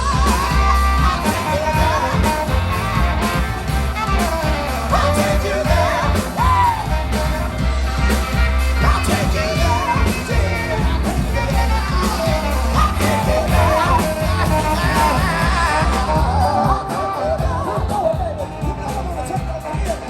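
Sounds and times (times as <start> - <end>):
heavy steady bass: 0.0 - 20.0
live band playing rock music: 0.0 - 20.0.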